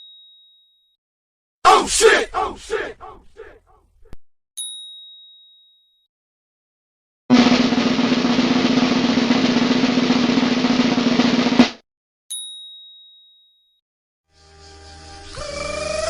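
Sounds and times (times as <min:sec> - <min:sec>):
high bell ding: 0:04.6 - 0:06.0, 0:12.3 - 0:13.7
snare drum roll: 0:07.3 - 0:11.8.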